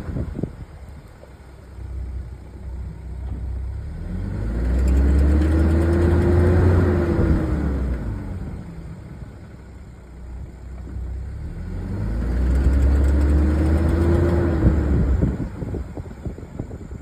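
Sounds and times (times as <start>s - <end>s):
car engine revving: 3.8s - 9.4s, 11.3s - 16.0s.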